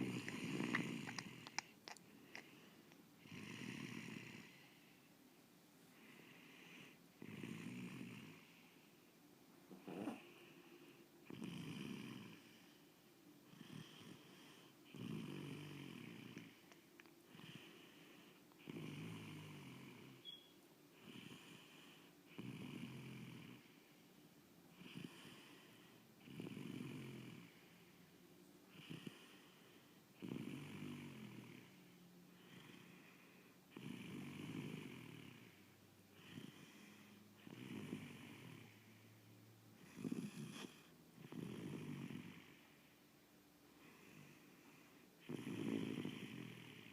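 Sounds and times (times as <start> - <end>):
rasping snoring: 0.0 - 2.5, 7.2 - 8.4, 11.3 - 12.5, 14.9 - 16.6, 18.6 - 20.2, 21.0 - 23.7, 26.2 - 27.6, 30.2 - 31.8, 33.7 - 35.6, 36.2 - 38.8, 39.8 - 42.6, 45.2 - 46.9.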